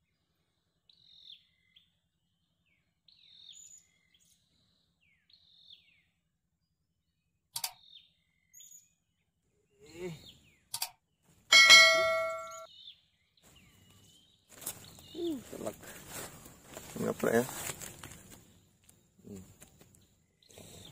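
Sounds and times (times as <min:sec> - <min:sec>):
sharp clicks: 0:07.6 - 0:07.8
loud metallic ding: 0:11.5 - 0:12.7.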